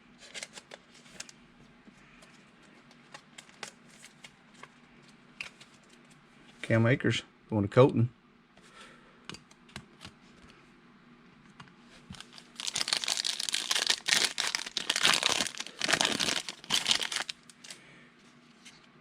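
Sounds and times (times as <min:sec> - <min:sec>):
plastic wrapper crinkling: 0:12.1 - 0:17.8.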